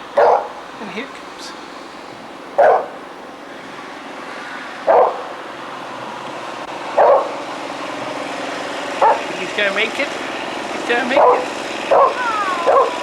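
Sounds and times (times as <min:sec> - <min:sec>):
truck approaching: 0:00.0 - 0:13.0
dog barking: 0:00.2 - 0:00.6, 0:02.6 - 0:03.0, 0:04.8 - 0:05.4, 0:07.0 - 0:07.4, 0:09.0 - 0:09.4, 0:11.0 - 0:13.0.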